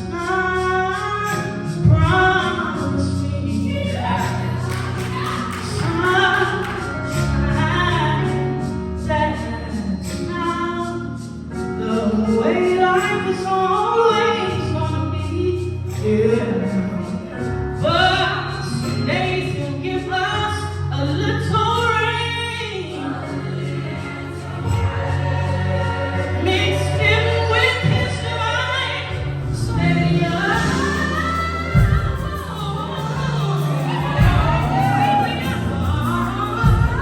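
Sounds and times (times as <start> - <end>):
gospel singing with instruments: 0.0 - 37.0
sustained low bass notes: 14.5 - 37.0.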